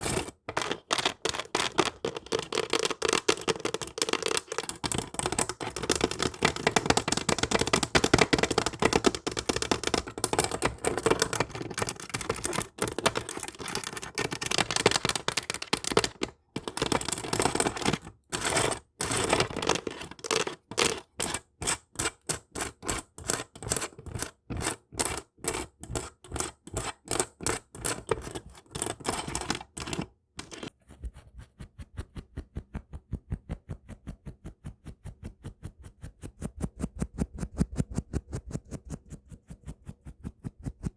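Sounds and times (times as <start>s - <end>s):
fingernails tapping and scratching: 0.0s - 30.8s.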